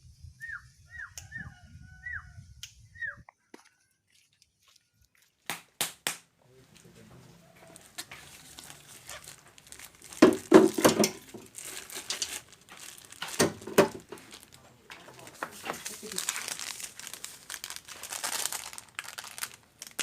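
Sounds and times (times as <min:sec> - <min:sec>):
crinkling rustling handling noise: 0:06.6 - 0:20.0.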